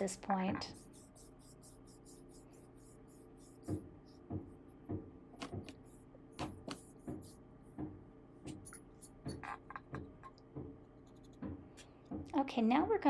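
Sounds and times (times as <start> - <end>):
brush swishing paint on canvas: 0.6 - 7.4.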